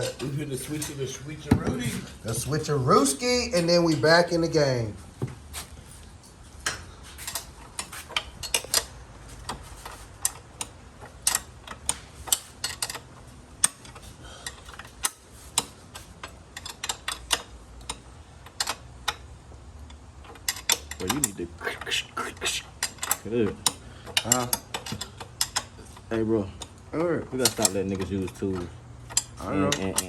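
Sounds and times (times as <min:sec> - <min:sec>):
metallic clicks of hand tools: 0:09.5 - 0:19.2.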